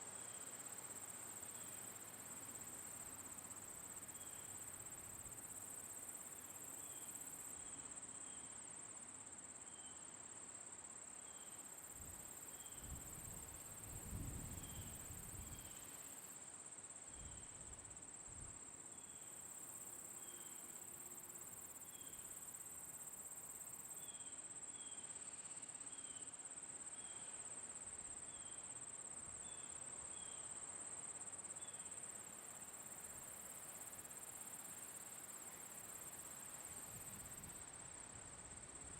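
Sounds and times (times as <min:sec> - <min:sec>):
insects trilling: 0:11.1 - 0:16.4.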